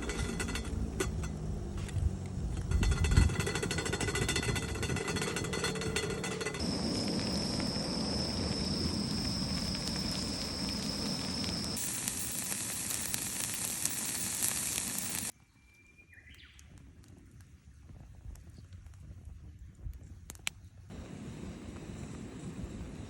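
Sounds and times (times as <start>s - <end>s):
fire crackling: 0.0s - 15.4s, 16.6s - 23.0s
food sizzling over campfire: 0.0s - 15.4s, 20.0s - 23.0s.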